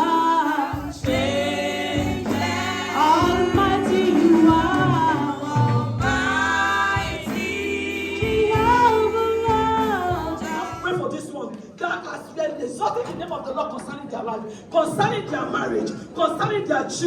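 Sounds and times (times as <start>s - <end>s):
group singing gospel song: 0.0s - 11.1s.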